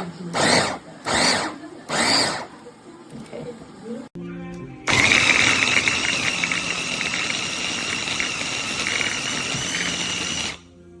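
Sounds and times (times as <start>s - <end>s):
food processor motor whine: 0.3s - 2.6s, 4.9s - 10.7s.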